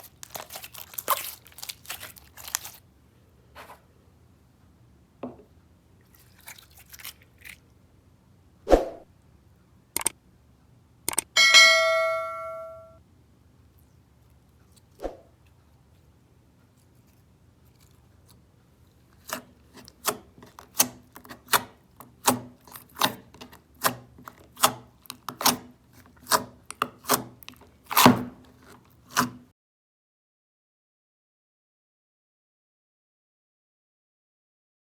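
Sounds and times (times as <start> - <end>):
crisp crunching cutting strokes: 0.0 - 2.8, 6.1 - 7.6, 16.8 - 29.5
ringing bell-like tone: 11.4 - 13.0.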